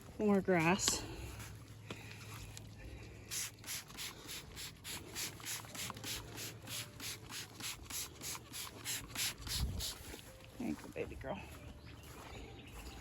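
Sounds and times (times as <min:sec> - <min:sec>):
spray bottle squirting: 0:03.3 - 0:10.1.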